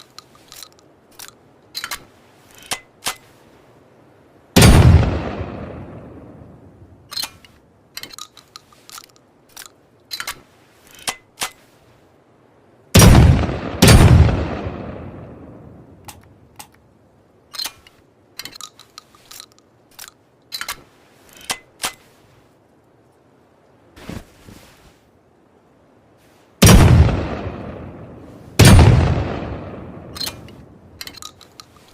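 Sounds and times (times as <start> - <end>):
gun handling clicks: 0.0 - 3.4, 7.1 - 11.8, 16.0 - 16.9, 17.5 - 22.2, 28.6 - 31.9.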